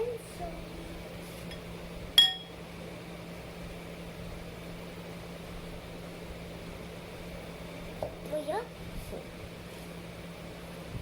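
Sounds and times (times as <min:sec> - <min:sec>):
steady low hum: 0:00.0 - 0:11.0
utensil clinking against bowl: 0:02.2 - 0:02.5.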